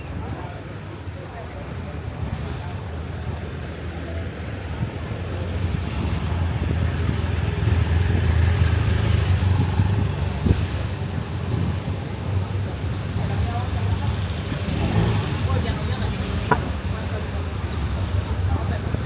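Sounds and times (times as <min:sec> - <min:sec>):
vehicle passing by: 0:13.8 - 0:18.2.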